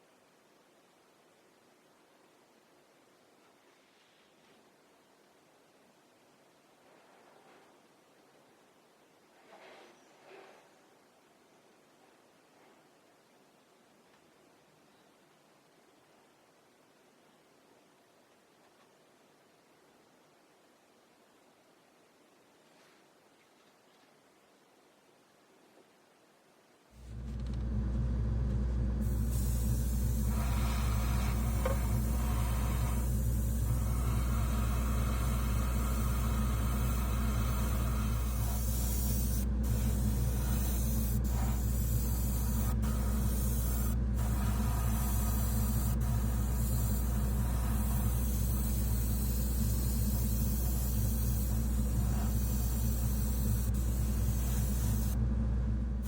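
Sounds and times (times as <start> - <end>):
compressor motor humming: 27.0 - 56.0
airbrush spraying hiss: 29.0 - 55.2.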